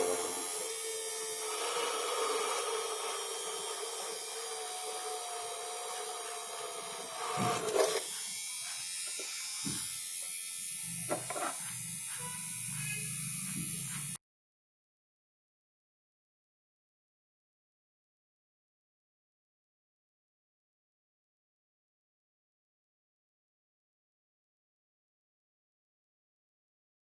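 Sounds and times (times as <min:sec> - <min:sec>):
small motor high whine: 0:00.0 - 0:14.2.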